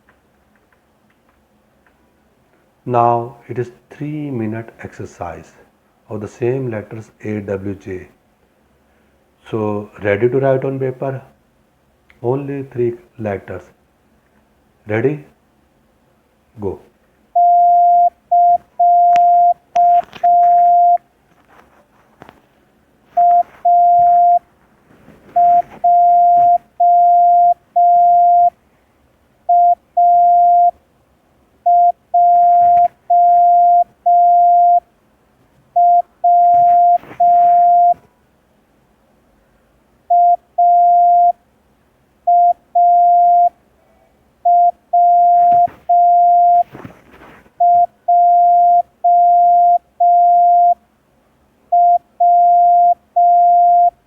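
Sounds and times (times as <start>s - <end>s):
morse code beeps: 17.4s - 21.0s, 23.2s - 24.4s, 25.4s - 28.6s, 29.5s - 30.8s, 31.7s - 34.8s, 35.8s - 38.0s, 40.1s - 41.4s, 42.3s - 43.5s, 44.5s - 46.7s, 47.6s - 50.8s, 51.8s - 54.0s.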